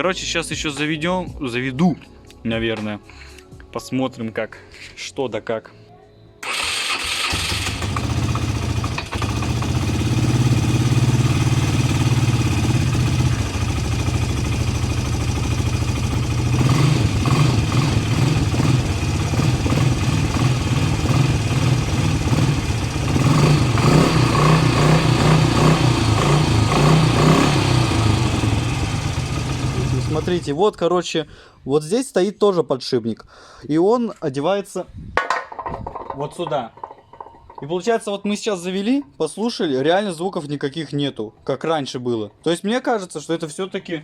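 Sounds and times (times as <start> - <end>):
atv engine revving: 6.4 - 30.6.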